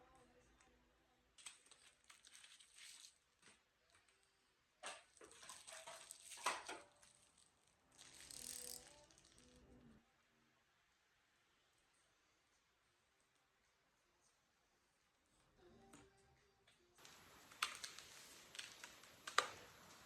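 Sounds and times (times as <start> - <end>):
objects being handled clicking: 4.8 - 9.6.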